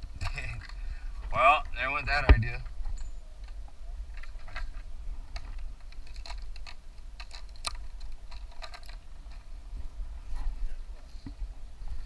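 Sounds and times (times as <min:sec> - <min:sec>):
steady low rumble: 0:00.0 - 0:02.9
twigs and branches crackling: 0:00.0 - 0:12.0.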